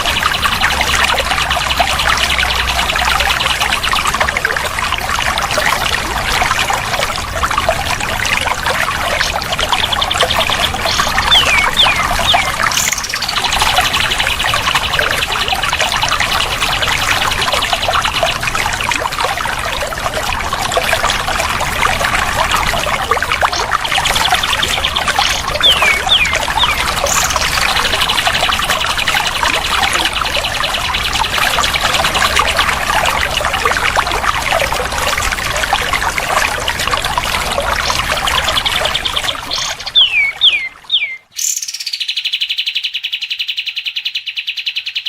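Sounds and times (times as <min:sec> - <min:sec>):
water trickling and splashing: 0:00.0 - 0:42.0
birds trilling: 0:09.1 - 0:15.4, 0:23.6 - 0:32.6, 0:37.8 - 0:42.4.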